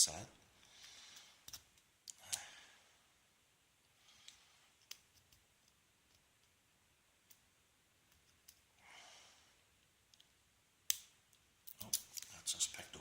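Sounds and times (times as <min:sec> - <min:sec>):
soft breath: 0:00.5 - 0:01.6, 0:02.2 - 0:03.2, 0:03.9 - 0:04.8, 0:08.8 - 0:09.7.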